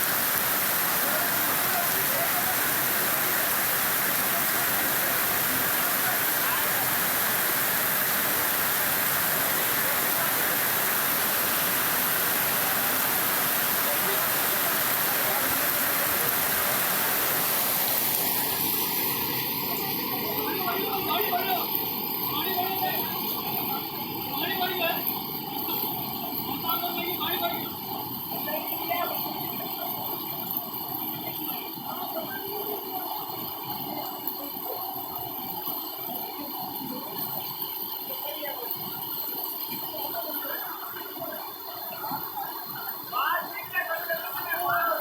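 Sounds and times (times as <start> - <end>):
floodwater rushing: 0.0 - 45.0.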